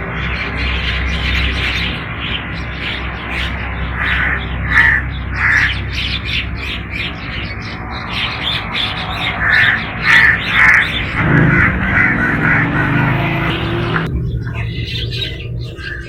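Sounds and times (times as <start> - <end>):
small birds chirping: 0.1 - 16.0
crows cawing: 4.0 - 5.8, 9.3 - 14.1.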